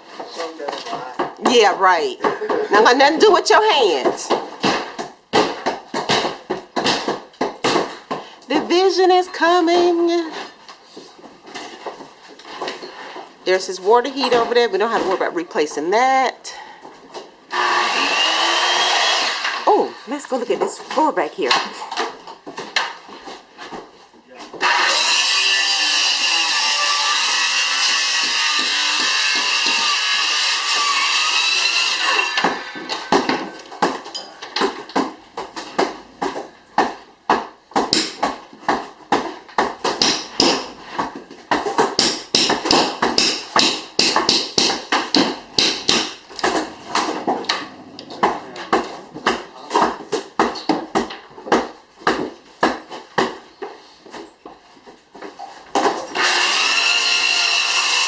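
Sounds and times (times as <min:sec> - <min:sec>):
hammer striking wood: 0:04.0 - 0:08.2, 0:27.2 - 0:34.0, 0:34.6 - 0:47.6
power tool running: 0:17.5 - 0:19.7, 0:24.6 - 0:32.9, 0:56.1 - 0:58.0.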